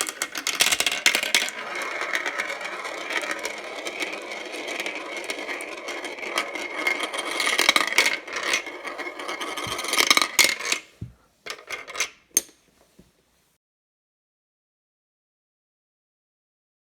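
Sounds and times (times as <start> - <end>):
marbles rolling and clacking: 0.0 - 12.6.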